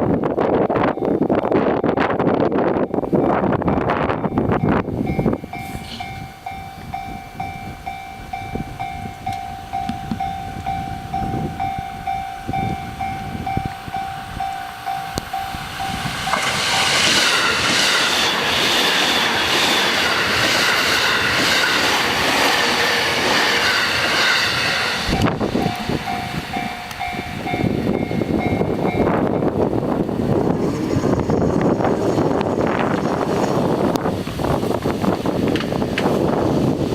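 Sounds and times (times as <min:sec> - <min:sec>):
electric train passing: 0:00.0 - 0:36.9
level-crossing alarm dinging: 0:02.7 - 0:29.6.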